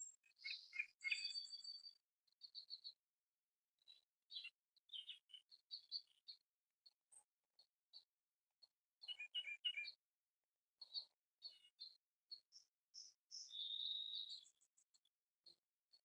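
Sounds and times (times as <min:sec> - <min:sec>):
small birds chirping: 0:00.0 - 0:03.0, 0:03.8 - 0:06.4, 0:09.0 - 0:10.0, 0:10.8 - 0:16.0.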